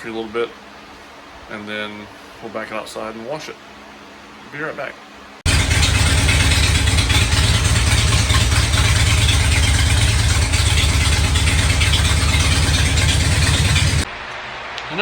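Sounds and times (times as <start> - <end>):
motorcycle engine idling: 5.5 - 14.1.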